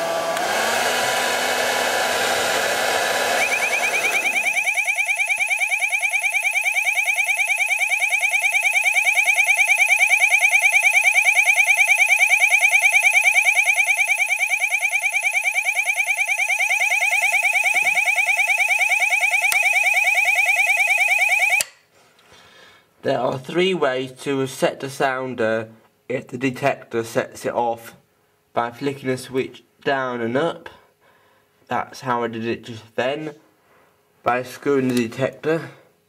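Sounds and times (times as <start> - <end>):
fire alarm warbling tone: 3.3 - 21.6.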